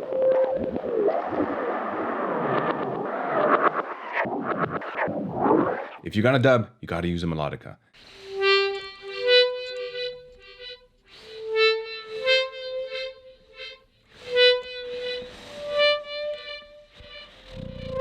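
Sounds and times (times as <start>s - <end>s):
melodica with delay: 8.0s - 18.0s.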